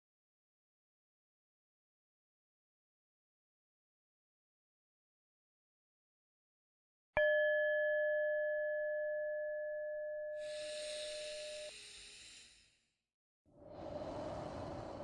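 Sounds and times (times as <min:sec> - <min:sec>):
person breathing: 0:10.4 - 0:12.6, 0:13.6 - 0:15.0.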